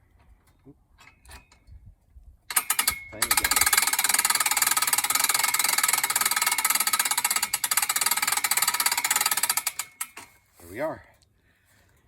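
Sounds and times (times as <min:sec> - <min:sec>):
ratchet clicking: 0:02.5 - 0:10.4.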